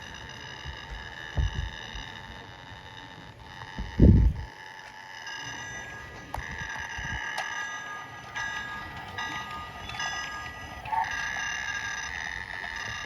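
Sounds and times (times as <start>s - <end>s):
high electronic ringing tone: 0.0s - 13.0s
toy train clicks: 0.0s - 13.0s.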